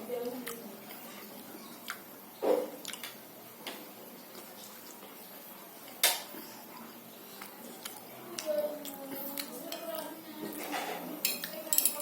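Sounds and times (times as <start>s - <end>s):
wet mouth eating noises: 0.3s - 3.2s, 5.9s - 10.1s
cutlery clicking on plate: 10.6s - 12.0s.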